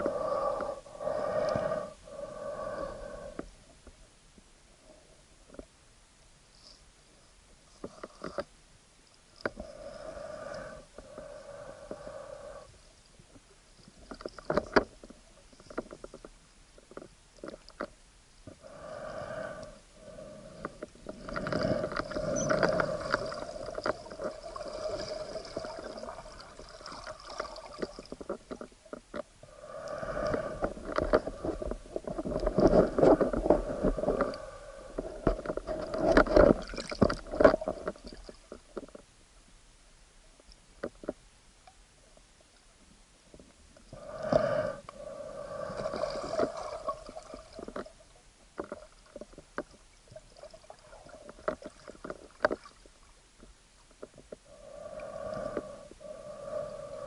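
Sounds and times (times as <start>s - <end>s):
underwater pitched drone: 0.0s - 4.0s, 17.4s - 39.0s
water gurgling: 21.1s - 28.6s.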